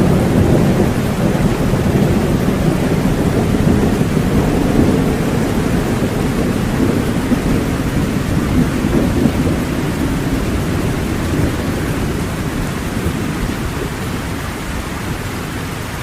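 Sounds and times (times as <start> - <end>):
heavy rain: 0.0 - 16.0
low rumble of thunder: 0.0 - 16.0.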